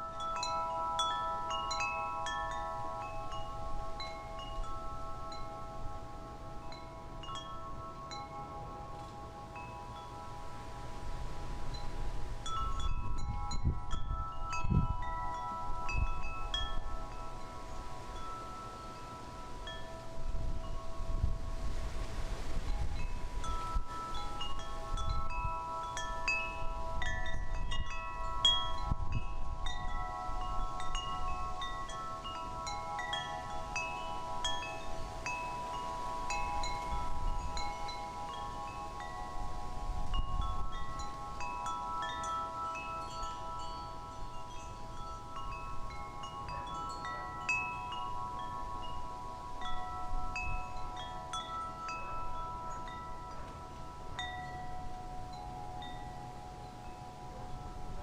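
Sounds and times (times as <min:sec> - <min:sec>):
wind chimes ringing: 0:00.0 - 0:58.0
wind gusting on microphone: 0:00.0 - 0:58.0.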